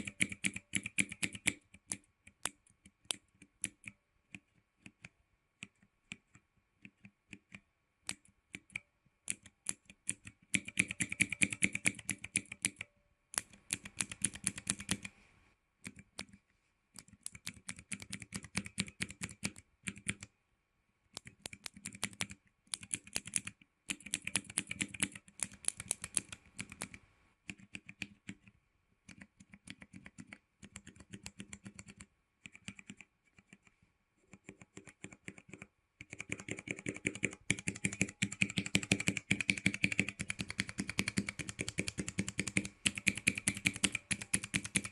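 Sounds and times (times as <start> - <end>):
mechanical keyboard keys clacking: 0.0 - 2.0, 9.3 - 15.1, 17.0 - 20.3, 21.2 - 28.4, 34.4 - 44.9.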